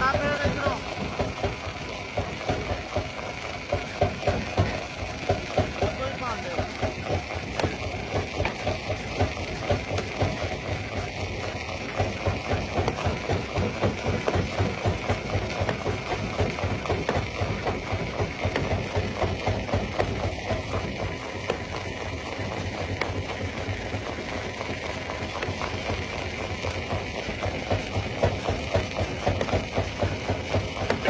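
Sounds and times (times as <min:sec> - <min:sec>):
jaw crusher knocking rock: 0:03.7 - 0:10.6, 0:12.0 - 0:21.7, 0:27.8 - 0:31.0.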